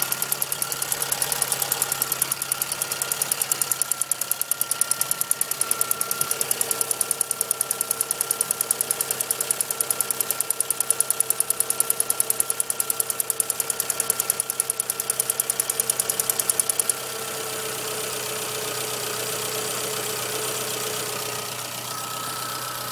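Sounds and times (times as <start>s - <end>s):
engine ticking: 0.0s - 17.1s
car engine running: 0.0s - 17.2s, 18.1s - 22.9s.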